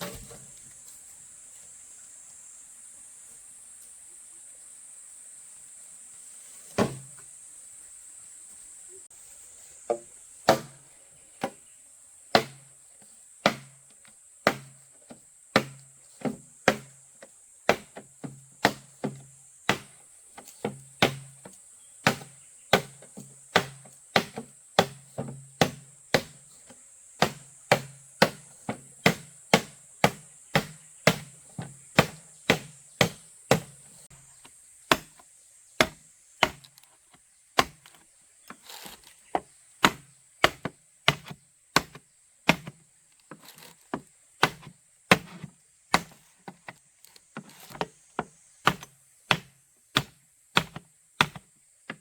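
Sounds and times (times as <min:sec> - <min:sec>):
blade chopping wood: 0:06.7 - 0:07.2, 0:09.9 - 0:11.6, 0:12.3 - 0:12.7, 0:13.4 - 0:33.9, 0:34.9 - 0:35.2, 0:35.8 - 0:36.9, 0:37.6 - 0:46.8, 0:47.4 - 0:52.0.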